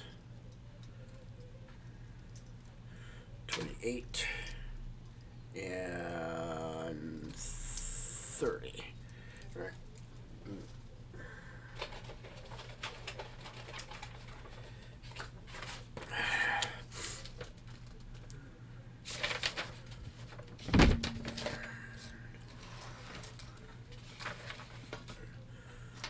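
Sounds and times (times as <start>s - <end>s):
steady low hum: 0.0s - 26.0s
loud thump: 20.7s - 21.7s.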